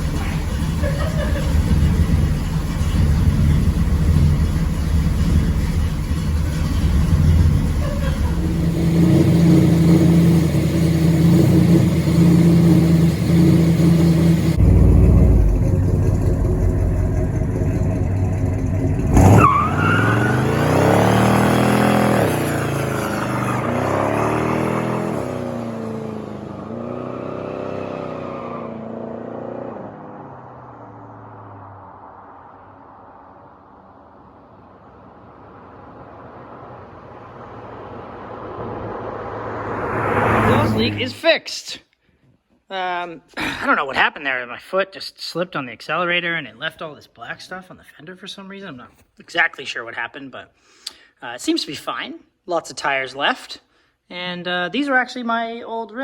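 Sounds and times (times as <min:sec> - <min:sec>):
engine rumbling and revving: 0:00.0 - 0:41.2.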